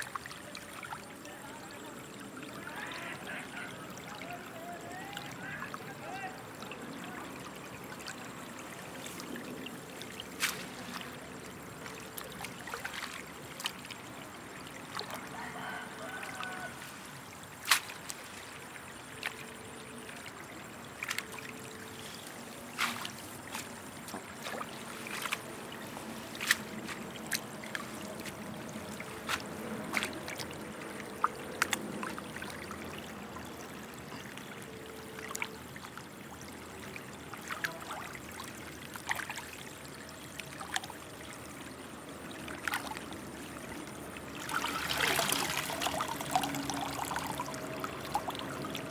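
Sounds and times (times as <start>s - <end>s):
water trickling: 0.0s - 48.9s.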